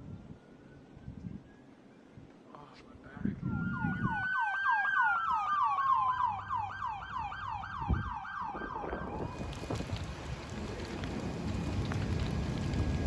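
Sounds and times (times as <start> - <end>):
siren wailing: 3.5 - 13.0
siren yelping: 3.6 - 9.4.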